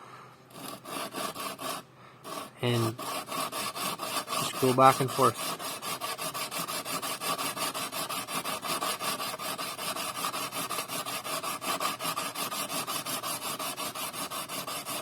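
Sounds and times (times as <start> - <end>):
steel rasping on wet sandpaper: 0.5 - 15.0.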